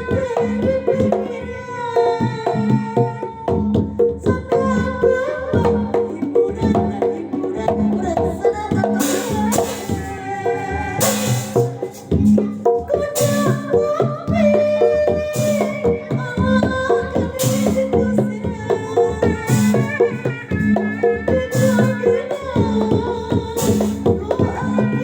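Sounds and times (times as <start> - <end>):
hand drum beat: 0.0 - 25.0
cymbal crashes: 11.0 - 11.8.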